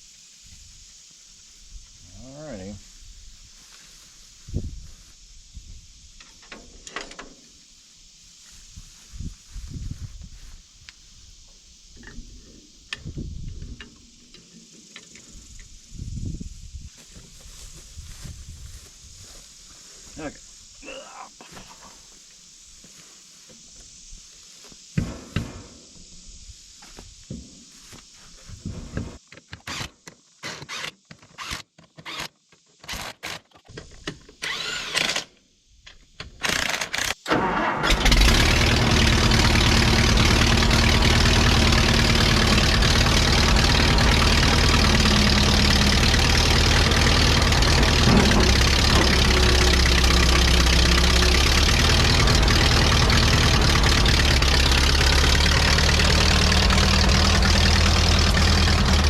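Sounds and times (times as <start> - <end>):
tractor engine starting and running: 36.3 - 59.0.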